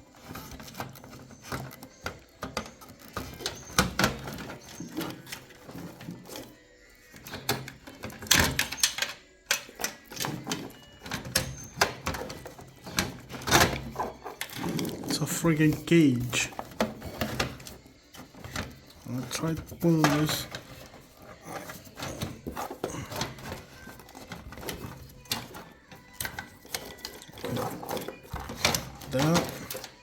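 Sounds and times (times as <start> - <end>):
hands working parts in pc case: 7.1 - 30.0.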